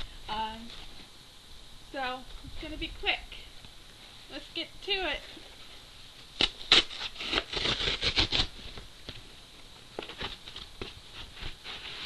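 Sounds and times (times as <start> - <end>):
cardboard box tearing and rustling: 6.4 - 8.8.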